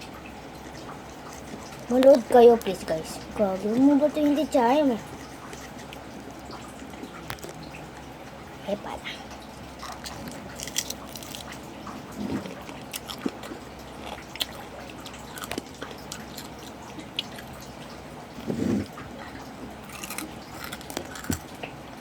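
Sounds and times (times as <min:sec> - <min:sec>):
person chewing crunchy food: 0:05.1 - 0:08.0, 0:09.8 - 0:17.8, 0:18.4 - 0:21.7.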